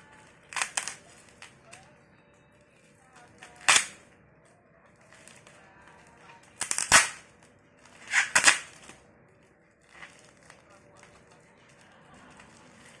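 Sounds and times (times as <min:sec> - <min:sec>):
packaging tearing: 0:00.5 - 0:01.5, 0:06.6 - 0:07.2, 0:07.9 - 0:09.0.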